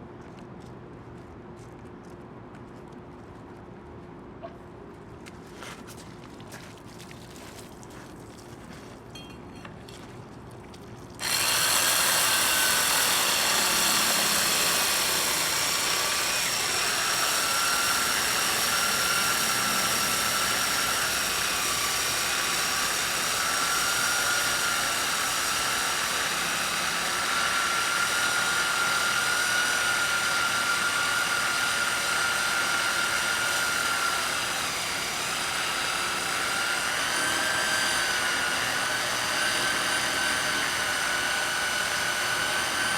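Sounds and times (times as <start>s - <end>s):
core drill motor whining: 11.2s - 42.9s.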